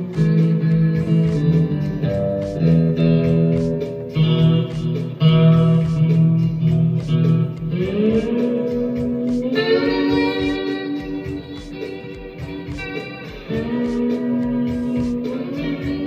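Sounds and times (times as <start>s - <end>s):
lap steel guitar slide notes: 0.0s - 16.0s.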